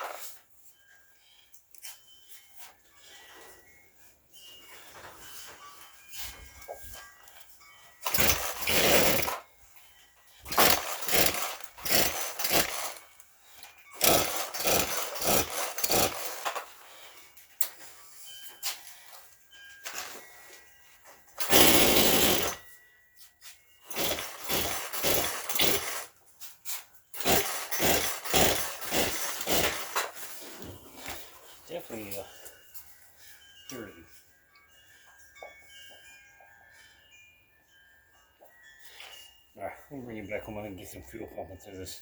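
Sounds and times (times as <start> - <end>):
chainsaw recoil starter rattling: 8.0 - 9.5, 10.5 - 13.2, 14.0 - 16.8, 21.4 - 22.6, 23.8 - 26.2, 27.2 - 30.4.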